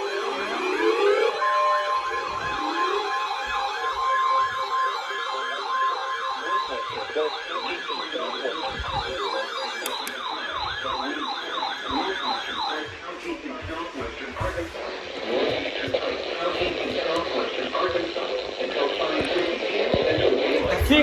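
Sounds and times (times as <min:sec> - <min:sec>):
electronic siren yelping: 0:00.0 - 0:21.0
steady high tone: 0:00.0 - 0:21.0.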